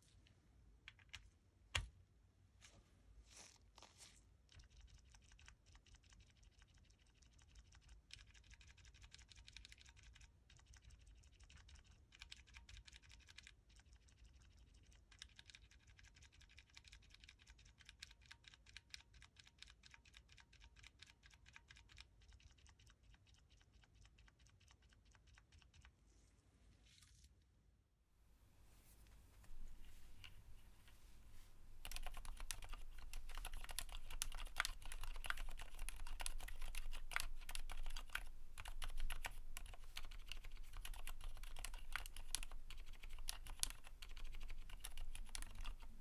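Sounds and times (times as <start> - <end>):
typing on mechanical keyboard: 4.6 - 25.9, 31.7 - 46.0.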